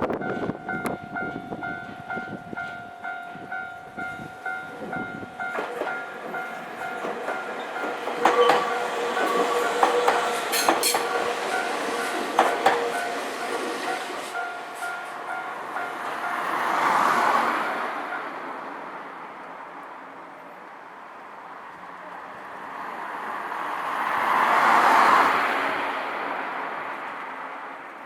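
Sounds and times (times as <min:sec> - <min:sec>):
road vehicles passing: 0:00.0 - 0:28.0
level-crossing warning alarm: 0:00.1 - 0:16.6.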